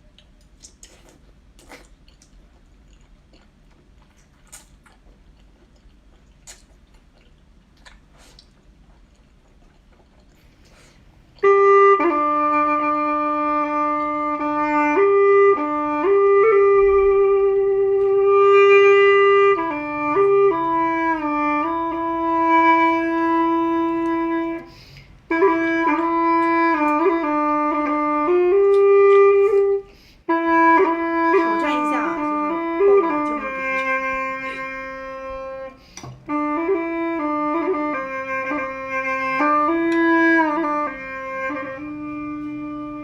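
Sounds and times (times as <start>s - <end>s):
reedy woodwind melody: 11.4s - 43.0s.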